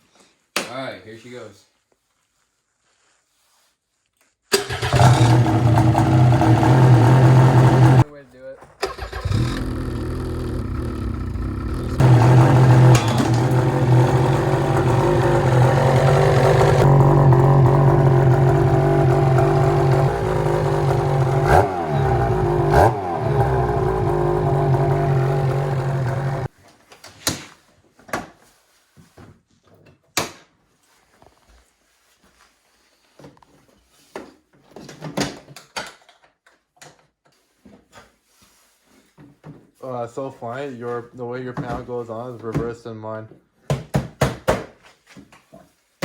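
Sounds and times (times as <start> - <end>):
snowmobile engine revving: 4.6 - 8.0, 8.8 - 26.5.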